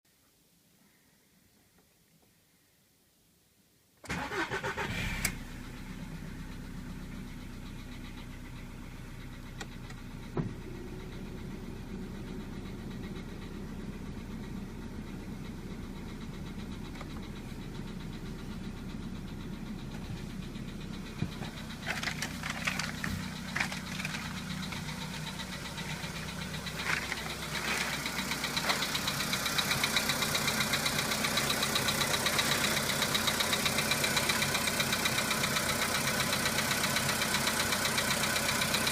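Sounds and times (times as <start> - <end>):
car engine starting: 4.0 - 38.9
engine idling with a knock: 9.4 - 11.6, 12.5 - 36.8.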